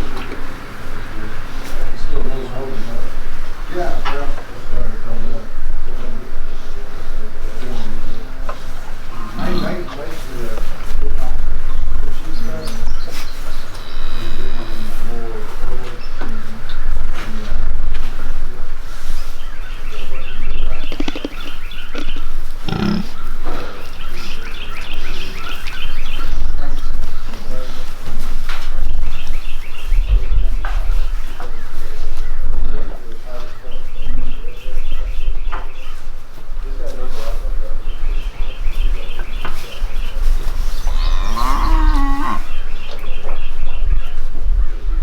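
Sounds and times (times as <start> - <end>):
small birds chirping: 0.0 - 45.0
pigs grunting: 9.0 - 10.4, 13.6 - 15.5, 21.0 - 23.7, 40.1 - 42.6
cow mooing: 13.6 - 15.2, 22.6 - 23.2, 40.3 - 42.6.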